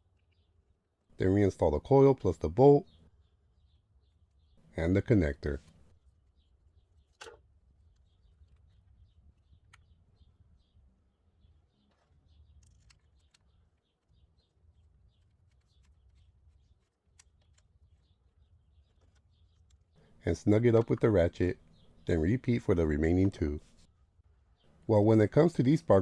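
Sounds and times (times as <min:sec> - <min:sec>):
faint birds chirping: 0:01.2 - 0:07.1, 0:17.9 - 0:23.9, 0:24.6 - 0:26.0.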